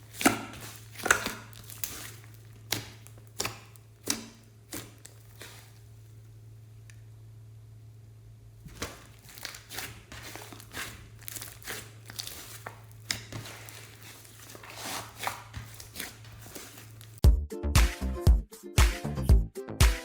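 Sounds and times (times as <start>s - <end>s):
sticky slime crackles and pops: 0.0s - 6.3s, 8.6s - 17.2s
dance music: 17.2s - 20.0s.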